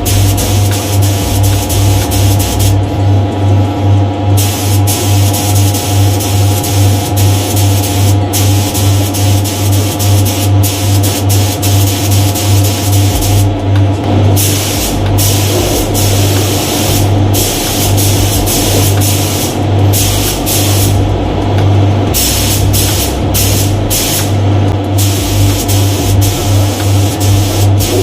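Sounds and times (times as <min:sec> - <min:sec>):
paint spray gun hissing: 0:00.0 - 0:02.8, 0:04.4 - 0:13.5, 0:14.4 - 0:21.0, 0:22.2 - 0:24.3, 0:25.0 - 0:28.0
steady low hum: 0:00.0 - 0:28.0.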